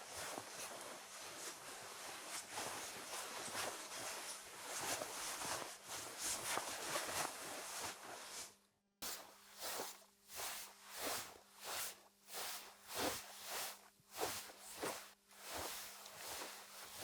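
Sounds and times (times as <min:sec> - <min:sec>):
fabric rustling: 0:00.2 - 0:10.5.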